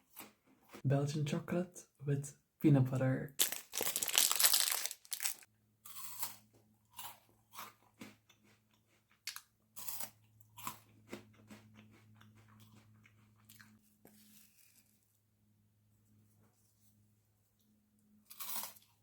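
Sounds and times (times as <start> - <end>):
crunchy chewing: 3.4 - 15.1, 18.3 - 19.0.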